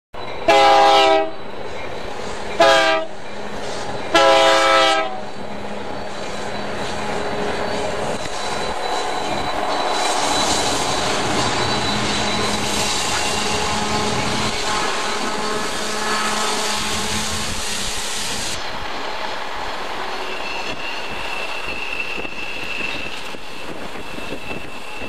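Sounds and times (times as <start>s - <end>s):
train rumble: 0.2s - 25.0s
locomotive air horn blasts: 0.5s - 1.4s, 2.6s - 3.2s, 4.1s - 5.2s, 13.3s - 17.8s.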